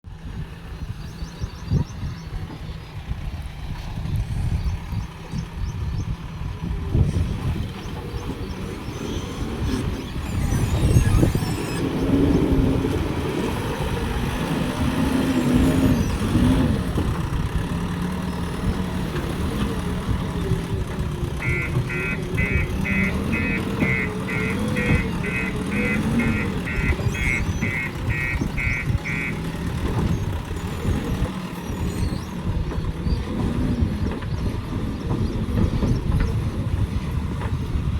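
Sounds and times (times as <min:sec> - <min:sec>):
diesel engine revving: 0:00.1 - 0:37.9
high warning beeper: 0:10.2 - 0:11.9, 0:21.4 - 0:29.4.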